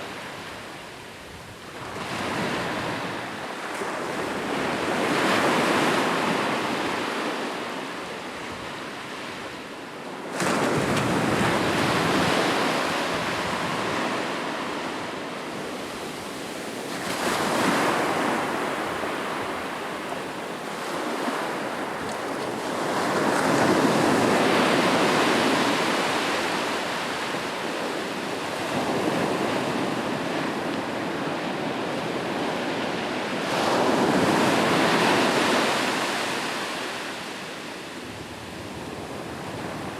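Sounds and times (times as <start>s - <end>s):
ocean waves breaking on shore: 10.1s - 39.9s.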